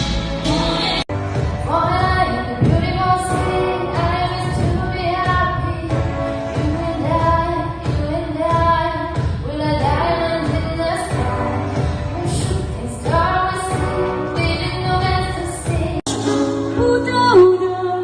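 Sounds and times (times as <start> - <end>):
person singing: 0.0 - 7.4
backing track: 0.0 - 18.0.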